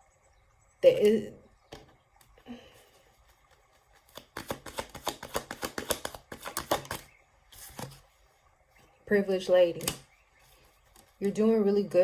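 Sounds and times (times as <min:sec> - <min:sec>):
cards being shuffled: 0:03.2 - 0:08.2.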